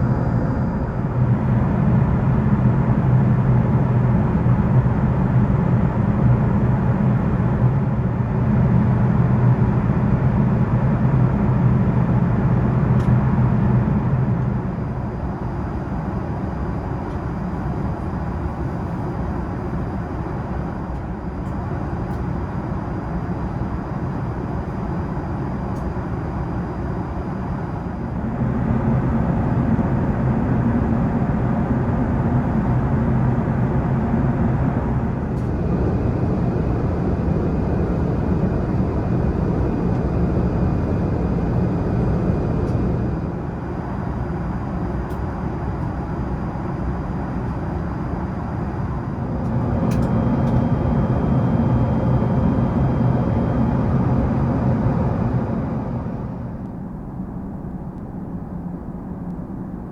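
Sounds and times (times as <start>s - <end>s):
low hum: 0.0s - 8.1s, 47.4s - 59.9s
airliner cabin engine drone: 0.0s - 59.9s.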